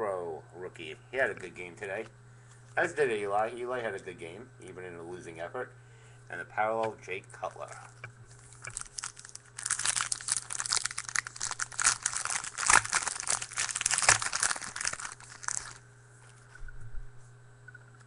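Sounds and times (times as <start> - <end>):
foil wrapper tearing and crinkling: 8.4 - 15.8.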